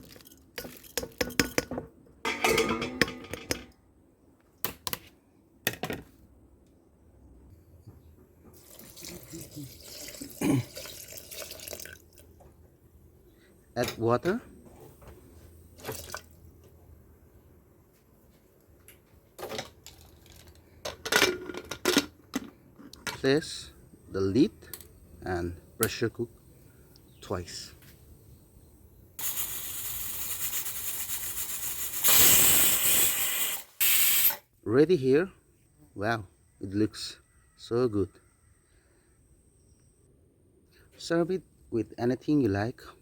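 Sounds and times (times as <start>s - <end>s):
container clattering against pot: 0.0s - 3.8s
pressure cooker metal clanks: 1.0s - 3.8s.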